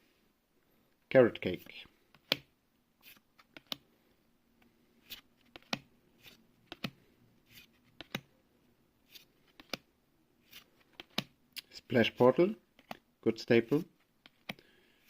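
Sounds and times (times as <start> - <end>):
cards sliding swishes: 3.0 - 3.9, 4.9 - 8.3, 9.0 - 9.8, 10.4 - 11.3
cards clicking: 5.1 - 7.0, 9.1 - 9.8, 10.5 - 11.3, 14.2 - 14.6.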